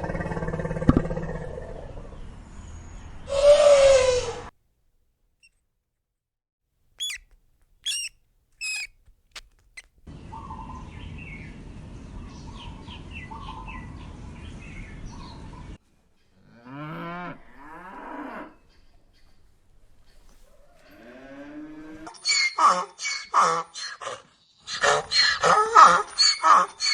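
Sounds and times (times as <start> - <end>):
outdoor background noise: 0.0 - 5.6, 6.8 - 26.9
birds chirping: 7.0 - 15.7
cow mooing: 16.4 - 18.6, 20.8 - 22.1.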